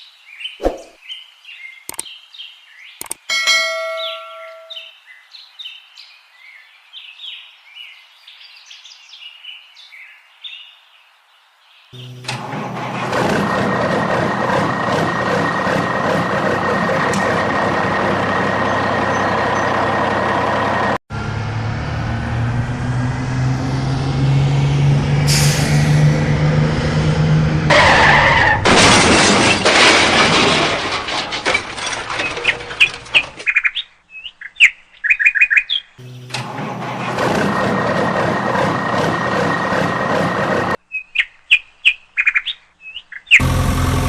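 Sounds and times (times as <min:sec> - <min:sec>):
steady engine hum: 0:12.0 - 0:28.4, 0:36.0 - 0:40.8, 0:43.4 - 0:44.0
engine rising in pitch: 0:12.0 - 0:28.5, 0:36.0 - 0:40.8, 0:43.4 - 0:44.0
loud noise: 0:36.0 - 0:40.8.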